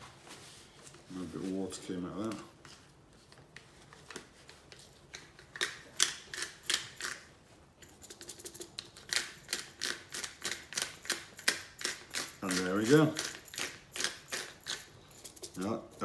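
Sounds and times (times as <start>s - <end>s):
pepper grinder ratcheting clicks: 5.5s - 7.2s, 7.9s - 15.6s.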